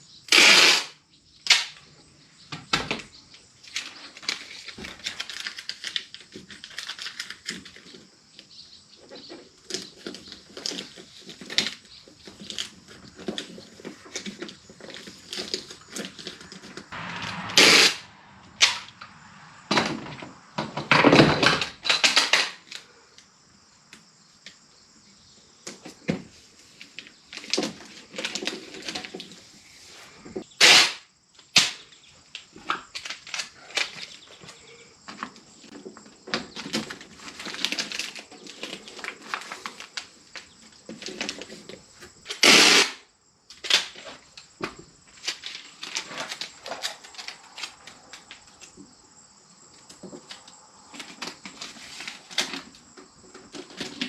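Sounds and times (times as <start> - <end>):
short bursts of noise: 17.0 - 19.6.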